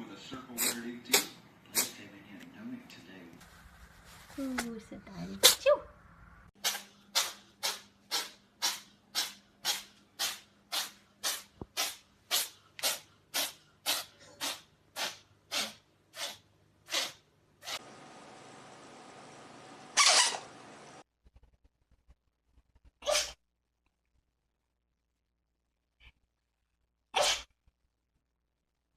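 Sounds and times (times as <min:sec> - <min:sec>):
cat sneezing: 0:00.6 - 0:02.0, 0:06.6 - 0:17.8, 0:23.0 - 0:23.4, 0:27.1 - 0:27.5.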